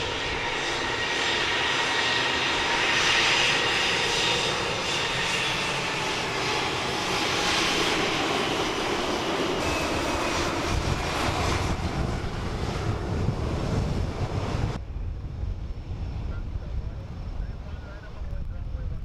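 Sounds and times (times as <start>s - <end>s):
jet engines whining: 0.0s - 19.0s
wind rumble on microphone: 9.7s - 19.0s.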